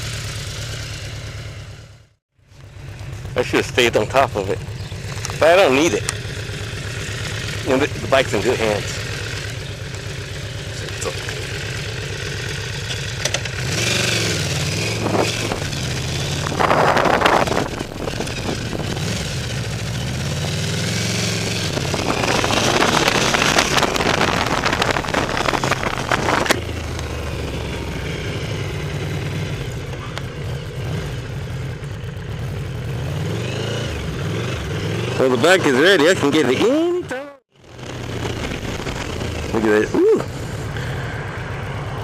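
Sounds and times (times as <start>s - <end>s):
motorcycle engine revving: 0.0s - 42.0s
loud rushing noise: 37.6s - 42.0s.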